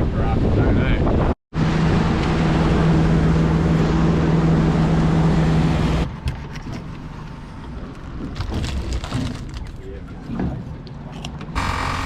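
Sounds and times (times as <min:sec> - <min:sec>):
wind and water rushing: 0:00.0 - 0:06.1
boat engine running: 0:01.6 - 0:06.0, 0:11.6 - 0:12.0.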